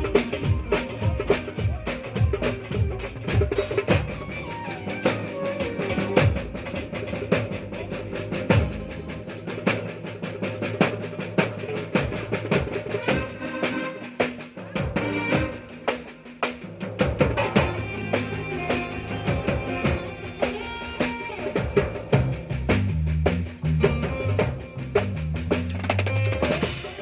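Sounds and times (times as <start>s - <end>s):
deep drum strikes: 0.0s - 13.4s, 21.4s - 27.0s
drums playing: 0.0s - 27.0s.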